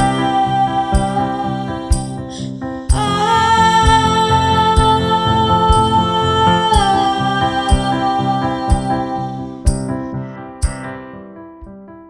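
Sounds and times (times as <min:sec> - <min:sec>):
soft keyboard notes: 0:00.0 - 0:11.0
sustained keyboard chords: 0:00.0 - 0:11.0
drum hit: 0:01.0 - 0:01.3, 0:01.9 - 0:02.2, 0:02.9 - 0:03.2, 0:03.8 - 0:04.2, 0:04.8 - 0:05.1, 0:05.7 - 0:07.1, 0:07.7 - 0:08.0, 0:08.7 - 0:09.0, 0:09.7 - 0:10.9.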